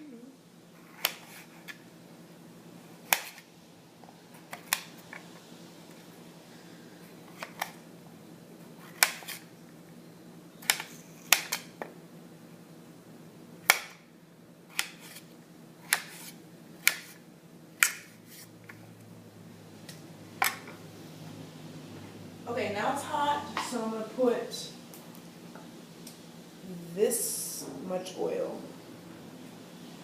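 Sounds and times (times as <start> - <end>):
knife cutting potato: 8.8 - 9.5, 14.7 - 17.2.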